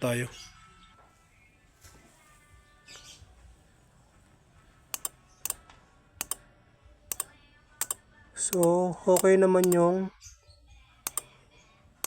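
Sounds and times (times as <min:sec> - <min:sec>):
relay double clicks: 0:05.0 - 0:05.6, 0:06.2 - 0:06.4, 0:07.1 - 0:09.8, 0:11.1 - 0:11.3.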